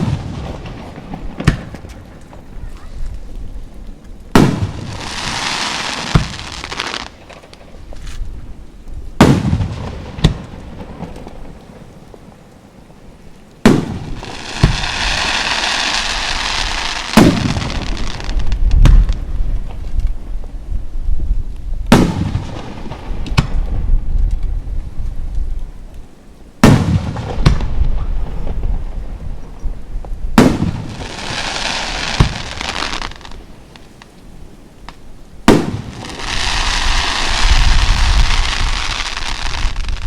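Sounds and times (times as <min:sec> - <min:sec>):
firework crackling hiss: 0:00.0 - 0:08.4, 0:13.2 - 0:20.2, 0:30.0 - 0:40.0.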